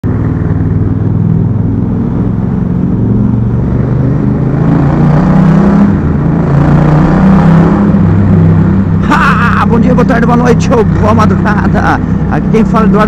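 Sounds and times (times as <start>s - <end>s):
motorcycle engine running: 0.0s - 4.6s.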